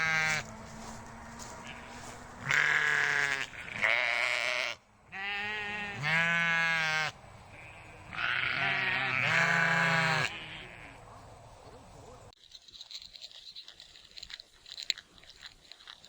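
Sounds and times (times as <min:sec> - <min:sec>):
sheep bleating: 0:00.0 - 0:00.5, 0:01.4 - 0:11.0.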